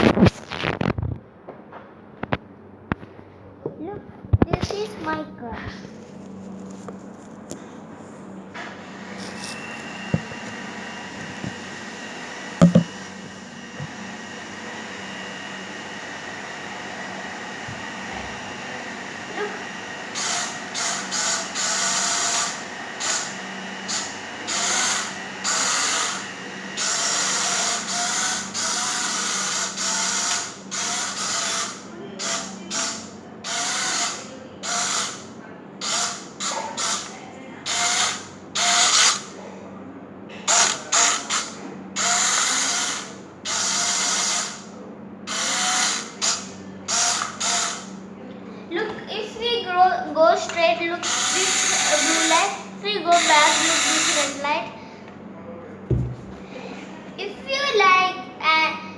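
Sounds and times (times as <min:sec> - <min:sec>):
steady low hum: 0:00.0 - 0:14.8
small electric motors whirring: 0:08.9 - 0:14.1, 0:17.4 - 0:39.3, 0:40.5 - 0:44.7, 0:45.3 - 0:48.0, 0:50.4 - 0:54.5.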